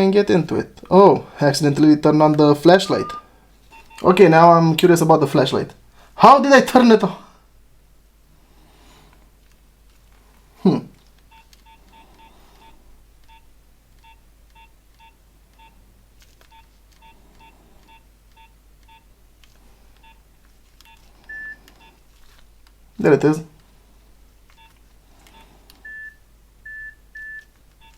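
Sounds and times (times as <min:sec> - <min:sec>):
phone keypad beeps: 0:02.8 - 0:04.0, 0:14.0 - 0:15.8, 0:16.5 - 0:19.1, 0:20.9 - 0:21.9, 0:24.5 - 0:27.9.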